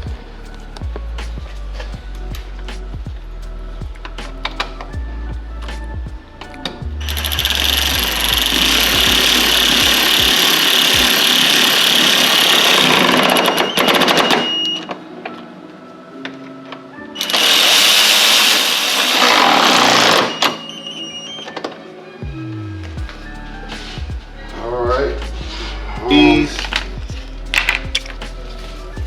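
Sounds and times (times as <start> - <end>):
power driver driving screws: 7.1 - 14.4, 17.2 - 20.6.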